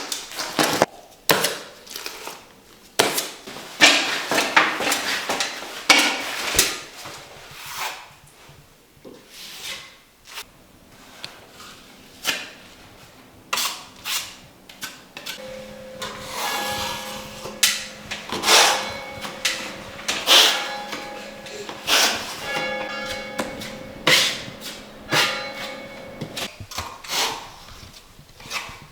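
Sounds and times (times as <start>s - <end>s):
steady pitched tone: 15.4s - 26.5s
tools knocking and clattering: 15.4s - 26.5s.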